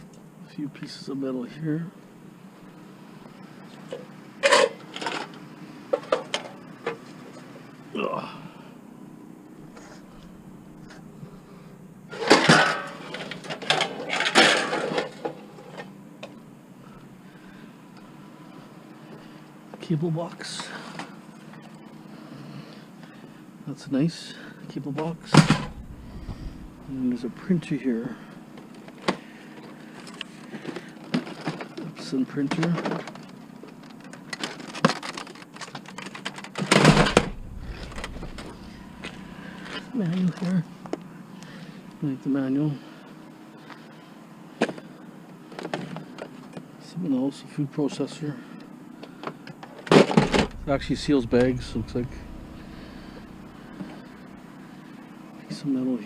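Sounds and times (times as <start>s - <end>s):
scrap metal clattering and banging: 12.1s - 15.4s, 25.2s - 27.2s, 36.6s - 39.9s, 50.0s - 54.4s.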